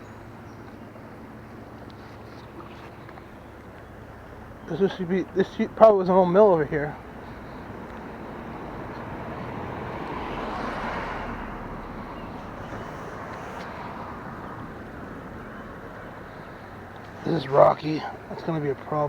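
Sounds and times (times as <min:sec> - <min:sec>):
vehicle passing by: 0:04.4 - 0:18.8.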